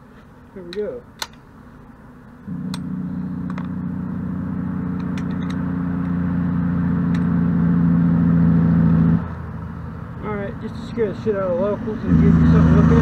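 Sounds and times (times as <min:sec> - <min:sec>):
motor droning: 0:02.4 - 0:10.2.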